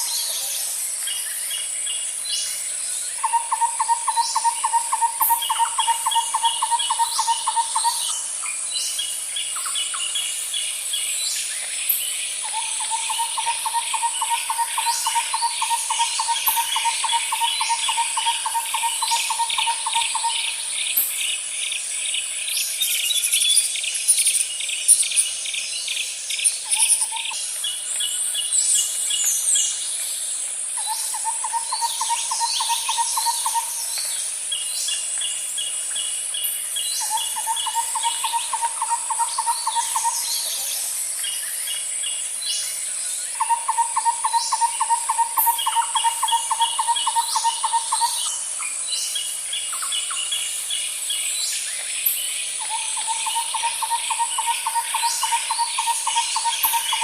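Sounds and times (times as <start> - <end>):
rapid insect chirping: 0.0 - 57.0.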